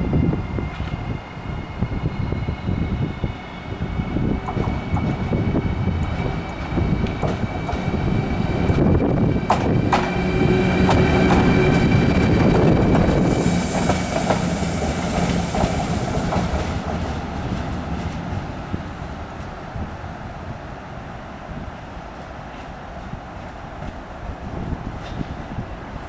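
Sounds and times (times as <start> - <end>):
rumble of train wheels: 0.0 - 26.0
hiss: 13.1 - 17.0.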